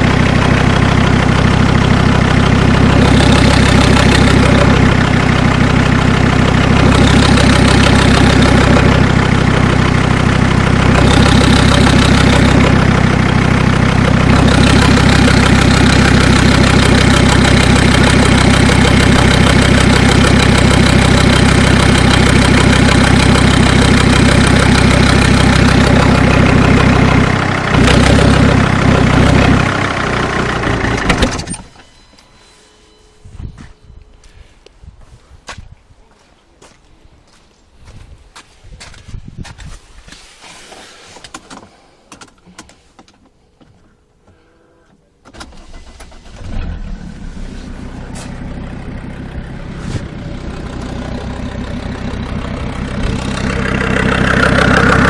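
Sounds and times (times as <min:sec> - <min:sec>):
diesel engine idling with a knock: 0:00.0 - 0:31.8, 0:46.5 - 0:55.0.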